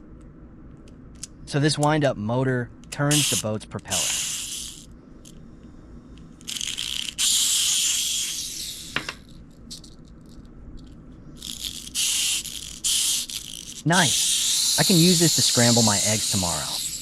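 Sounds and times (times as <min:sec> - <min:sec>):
clockwork motor whirring: 0:03.1 - 0:04.9, 0:06.4 - 0:09.9, 0:11.4 - 0:17.0.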